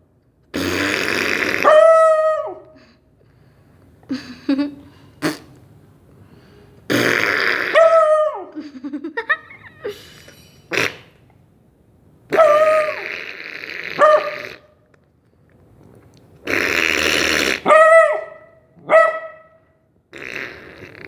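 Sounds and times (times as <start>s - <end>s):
puppy howling: 1.6s - 2.7s, 7.8s - 8.6s
raspy snore: 16.5s - 17.6s, 20.1s - 21.0s.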